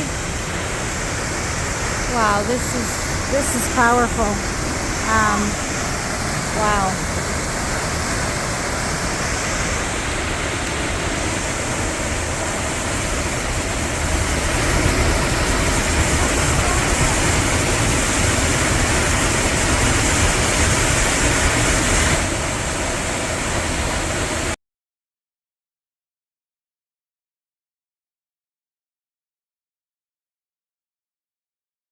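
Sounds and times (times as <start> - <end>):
waterfall roaring: 0.0 - 24.6.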